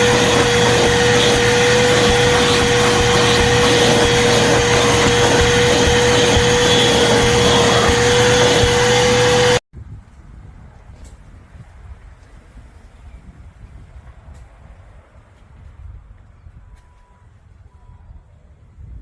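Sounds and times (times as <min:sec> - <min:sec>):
shop vacuum running: 0:00.0 - 0:09.6.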